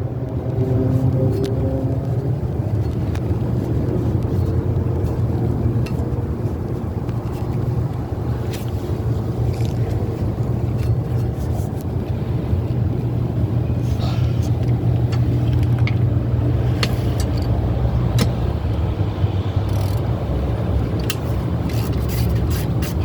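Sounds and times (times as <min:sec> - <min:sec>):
low background rumble: 0:00.0 - 0:23.0
small parts clicking: 0:19.6 - 0:20.1, 0:20.9 - 0:23.0.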